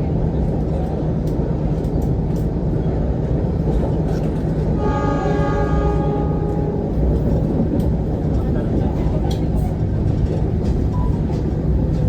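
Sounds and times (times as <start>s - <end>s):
train coach rumbling on rails: 0.0s - 12.0s
train horn chord: 4.8s - 7.0s.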